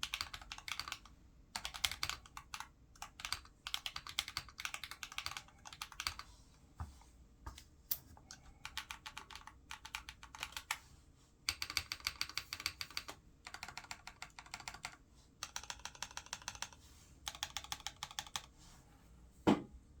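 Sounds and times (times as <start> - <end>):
mechanical keyboard typing: 0.0 - 6.3, 8.3 - 10.8, 11.5 - 18.5.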